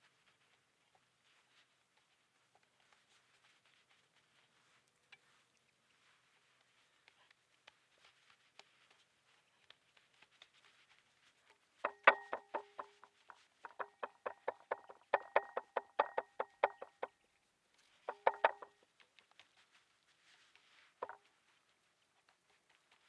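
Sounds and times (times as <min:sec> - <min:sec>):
quick ringing knocks: 0:11.8 - 0:13.1.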